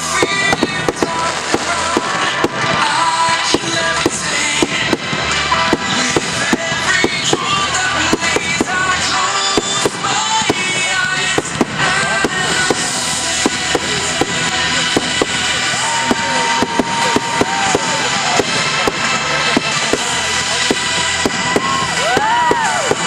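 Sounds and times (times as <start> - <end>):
fireworks bangs and crackles: 0.0 - 23.0
music playing: 0.0 - 23.0.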